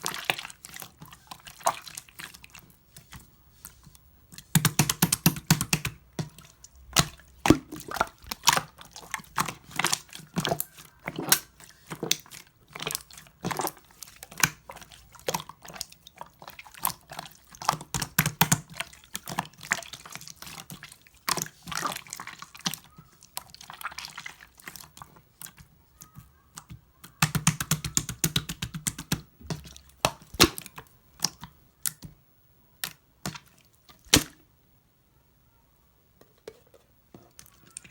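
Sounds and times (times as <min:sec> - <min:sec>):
slime squelching and clicking: 0:00.0 - 0:32.2, 0:32.8 - 0:34.4.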